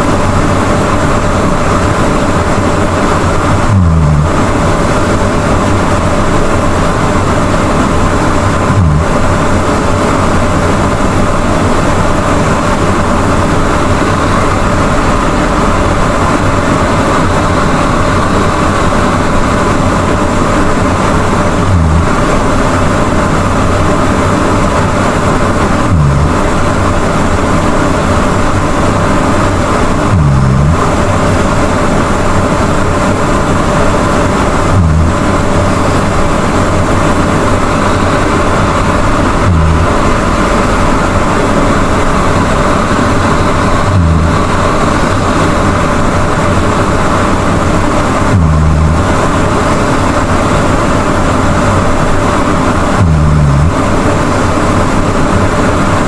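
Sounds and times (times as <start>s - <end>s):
person snoring loudly: 3.6s - 4.6s, 8.6s - 9.7s, 21.6s - 22.6s, 25.8s - 26.6s, 30.0s - 31.3s, 34.6s - 35.8s, 39.2s - 42.1s, 42.7s - 45.4s, 48.1s - 49.4s, 52.9s - 54.0s.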